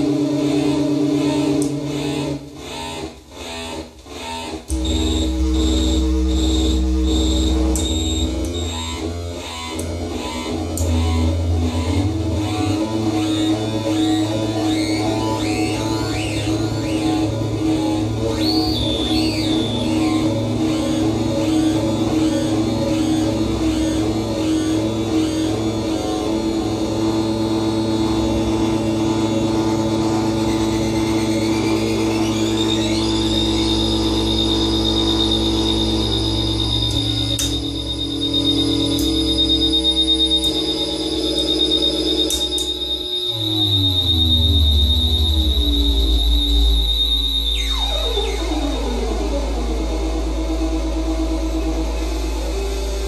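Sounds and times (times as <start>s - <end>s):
buzzing synthesizer drone: 0.0s - 53.0s
stuttering synthesizer pulses: 4.5s - 53.0s
high synthesizer beeps: 4.8s - 9.0s, 14.8s - 21.0s, 27.0s - 49.1s.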